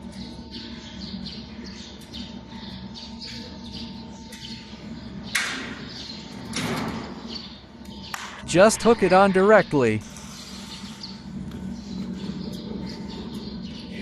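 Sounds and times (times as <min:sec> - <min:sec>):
birds chirping: 0:00.0 - 0:14.0
steady hum: 0:07.6 - 0:14.0.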